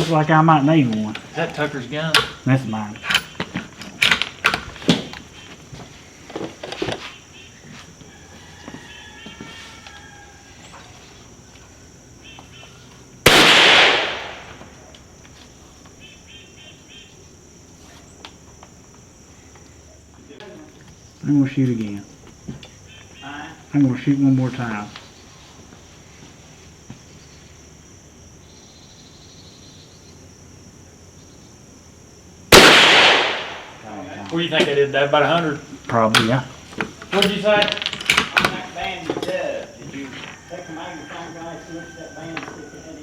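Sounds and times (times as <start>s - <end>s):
insects chirring: 0.0s - 43.0s
rifle shot with ringing tail: 13.3s - 14.7s, 32.5s - 33.8s.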